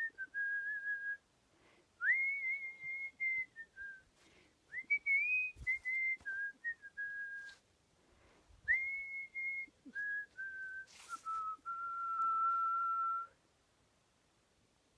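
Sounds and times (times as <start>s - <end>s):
person whistling a melody: 0.0s - 1.2s, 2.0s - 4.1s, 4.7s - 7.6s, 8.7s - 13.4s.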